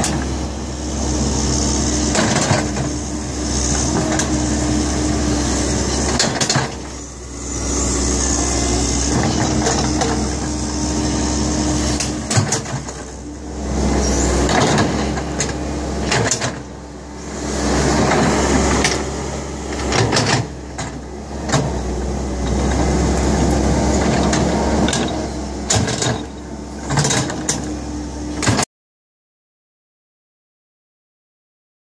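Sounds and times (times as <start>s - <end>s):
excavator diesel engine working: 0.0s - 28.7s.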